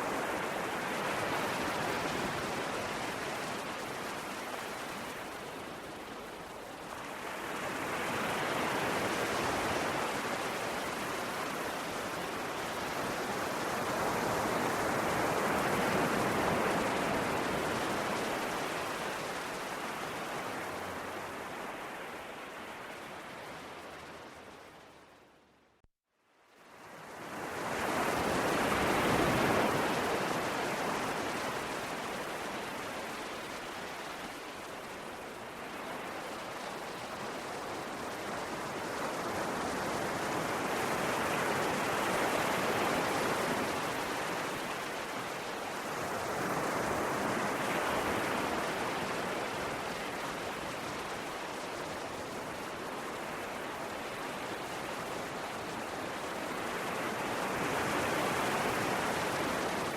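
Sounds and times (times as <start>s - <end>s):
ocean waves washing in: 26.6s - 59.9s.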